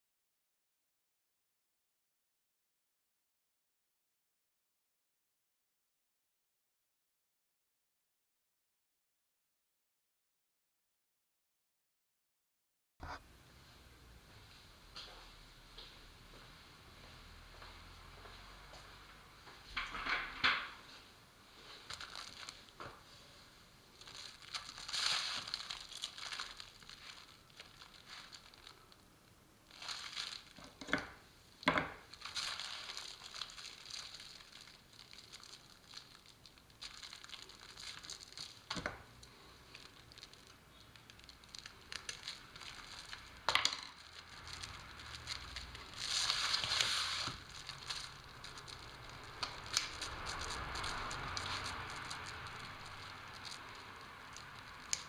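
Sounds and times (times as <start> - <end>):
plastic sheeting crinkling: 16.9 - 55.0.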